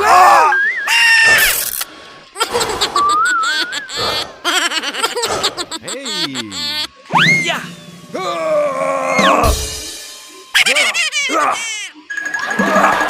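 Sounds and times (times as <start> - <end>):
wobbly whistle-like tone: 0.4 - 1.4
falling slide whistle: 0.4 - 1.6
cartoon giggles and laughs: 2.4 - 7.1, 10.5 - 13.0.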